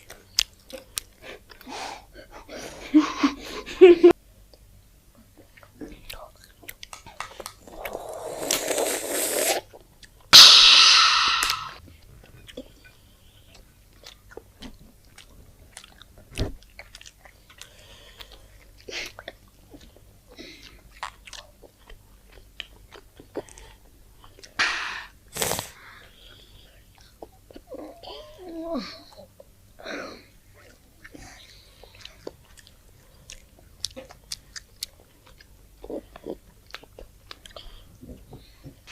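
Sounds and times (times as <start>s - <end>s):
chewing and crunching food: 0.0s - 2.8s, 4.5s - 10.3s, 11.8s - 38.9s
loud short noisy bursts: 10.4s - 11.8s.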